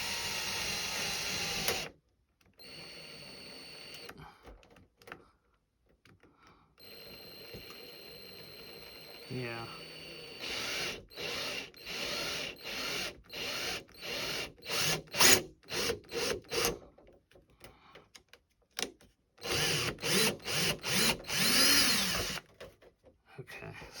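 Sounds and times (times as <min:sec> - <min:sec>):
small power drill running: 0:00.0 - 0:01.9, 0:02.6 - 0:04.2, 0:06.8 - 0:16.8, 0:19.4 - 0:22.4.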